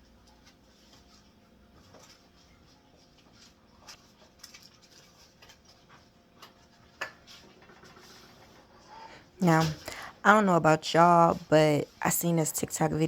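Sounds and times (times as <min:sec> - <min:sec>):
light clicks and taps of food handling: 0:00.1 - 0:08.2.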